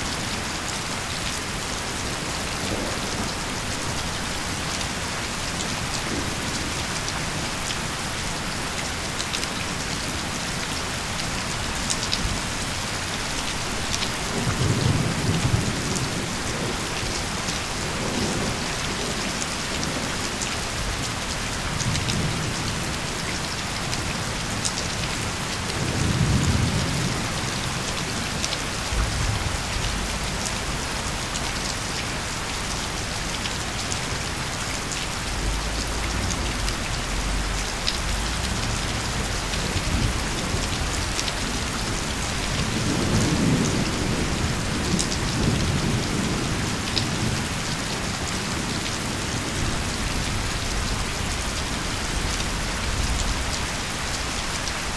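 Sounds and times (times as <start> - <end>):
heavy rain hissing: 0.0 - 54.9
thunder rumbling: 24.2 - 54.6
raindrops ticking: 28.0 - 44.3.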